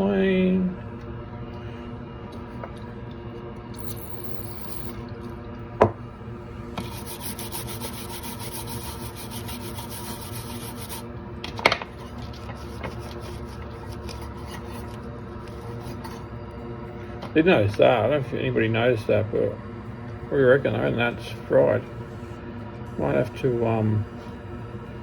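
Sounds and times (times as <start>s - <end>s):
steady background hum: 0.0s - 25.0s
rapid scrubbing strokes: 6.8s - 11.1s.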